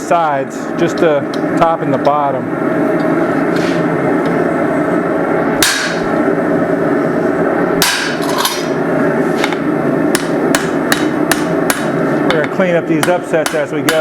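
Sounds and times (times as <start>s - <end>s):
steady drone: 0.0s - 14.0s
hammer striking on hot steel: 5.6s - 6.1s, 7.8s - 8.8s, 9.4s - 14.0s.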